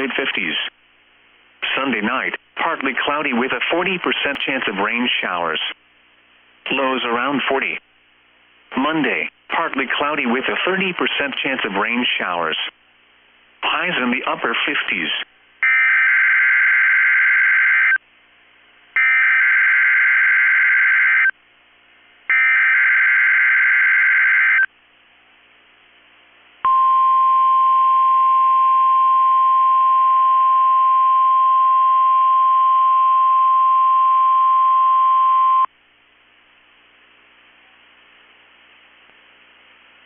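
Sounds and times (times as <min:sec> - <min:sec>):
radio hiss: 0:00.0 - 0:00.8
steady alarm tone: 0:15.6 - 0:18.0, 0:19.0 - 0:21.3, 0:22.3 - 0:24.7.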